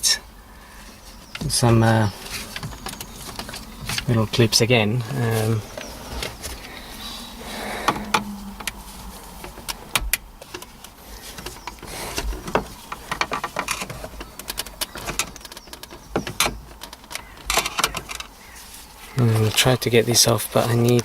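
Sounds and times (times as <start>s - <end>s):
car radio unit being pried: 1.3s - 7.0s.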